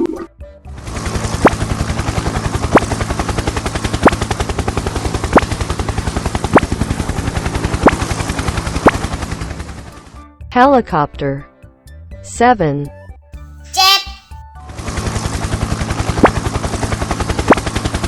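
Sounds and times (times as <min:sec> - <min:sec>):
helicopter rotor chopping: 0:00.8 - 0:10.1, 0:14.7 - 0:18.0.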